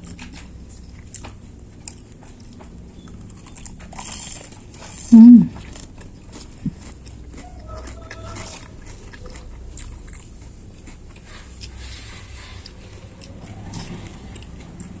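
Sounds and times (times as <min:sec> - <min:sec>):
chewing crispy fried tofu: 0:00.0 - 0:15.0.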